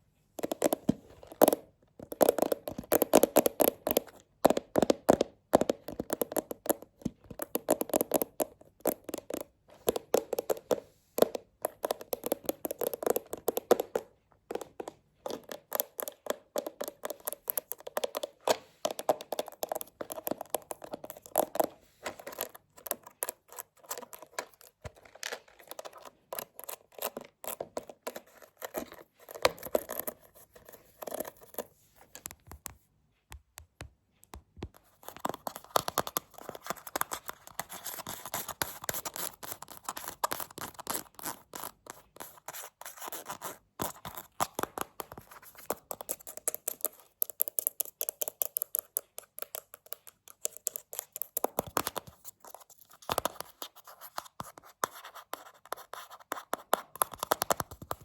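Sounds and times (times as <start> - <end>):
rapid tapping and scratching: 53.0 - 58.0.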